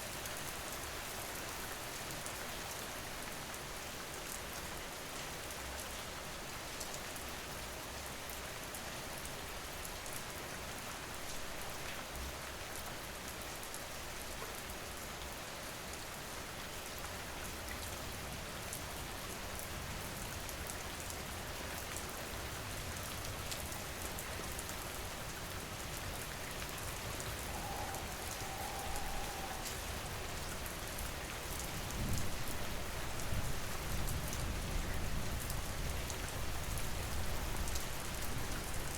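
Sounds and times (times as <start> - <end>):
steady rain falling: 0.0 - 38.9
low rumble: 27.1 - 31.2.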